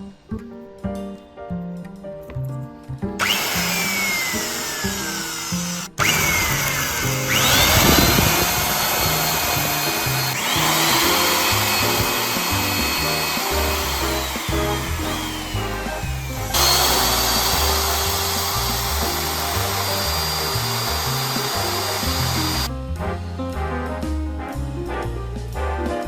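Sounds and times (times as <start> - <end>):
background music: 0.0 - 26.0
electric drill whining into wood: 3.2 - 22.7.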